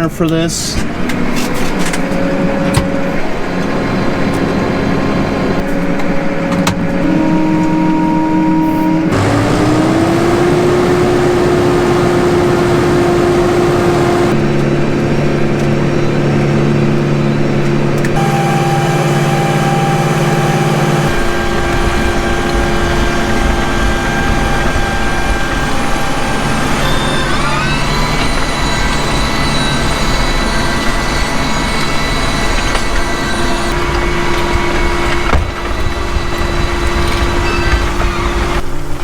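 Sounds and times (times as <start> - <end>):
farm vehicle engine running: 9.0 - 38.9.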